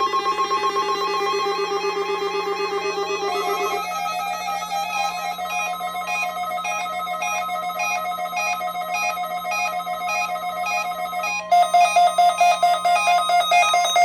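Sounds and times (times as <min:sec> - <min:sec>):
radio receiver alarm beeping: 0:03.3 - 0:14.0
steady warning alarm tone: 0:03.3 - 0:14.0.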